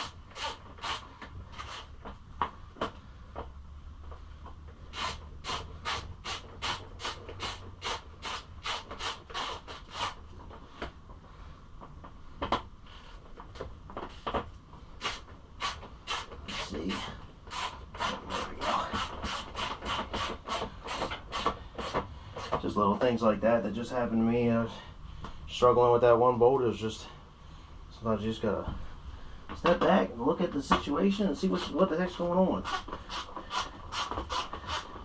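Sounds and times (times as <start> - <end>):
rhythmic rubbing strokes: 15.0 - 22.7.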